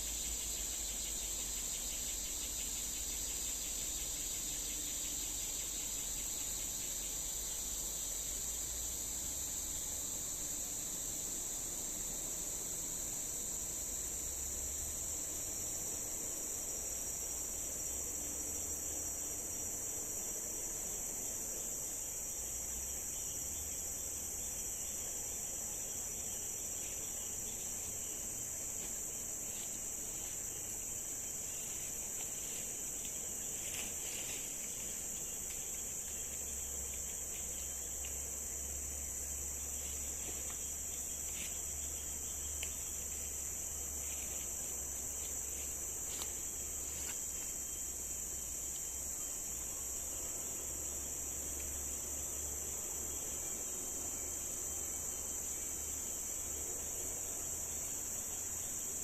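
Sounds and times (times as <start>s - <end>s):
insect chorus drone: 0.0s - 59.0s
faint ticks and rustles: 15.4s - 54.7s.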